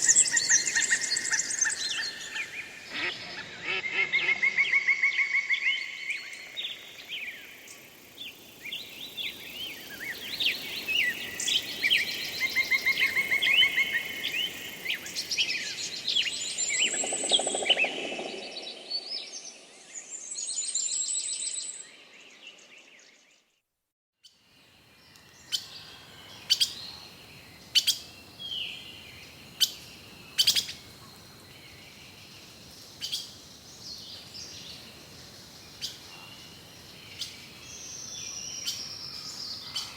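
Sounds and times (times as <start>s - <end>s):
birds trilling and chirping: 9.3s - 19.6s.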